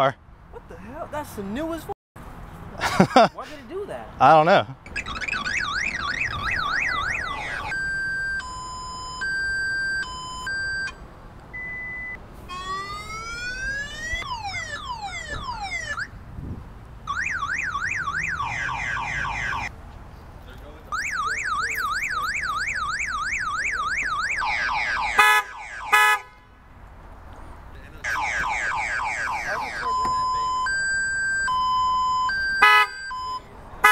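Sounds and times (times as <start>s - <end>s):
car alarm siren from speaker: 4.9s - 11.0s, 11.6s - 16.1s, 17.1s - 19.7s, 20.9s - 26.3s, 28.0s - 33.9s.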